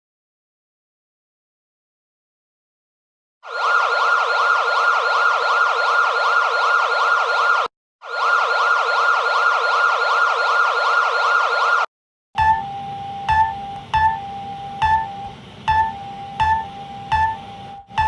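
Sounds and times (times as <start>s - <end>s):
warbling electronic alarm tone: 3.4s - 18.0s.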